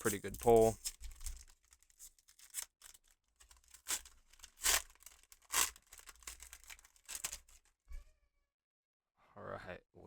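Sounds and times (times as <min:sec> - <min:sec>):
foil pack tearing and crinkling: 0:00.0 - 0:07.7.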